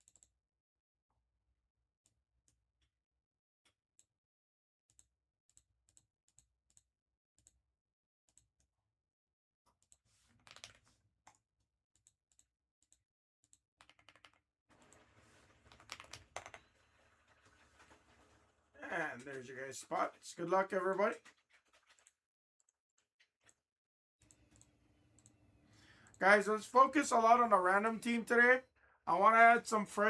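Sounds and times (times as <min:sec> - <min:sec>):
faint keyboard typing: 0:09.8 - 0:11.0, 0:12.0 - 0:23.6, 0:24.2 - 0:27.1.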